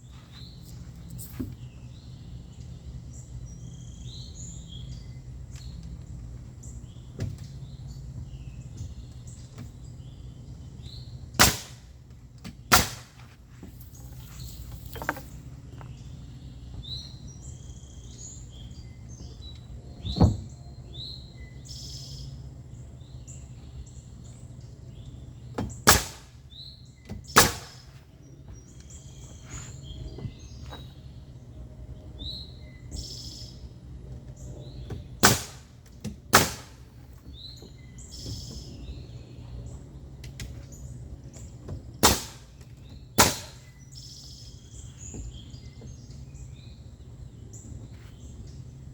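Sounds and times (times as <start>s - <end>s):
birds chirping: 0.0s - 48.9s
sharp construction strikes: 11.4s - 11.8s, 12.7s - 13.2s, 25.8s - 26.3s, 27.4s - 27.9s, 35.2s - 35.7s, 36.3s - 36.8s, 42.0s - 42.5s, 43.2s - 43.7s.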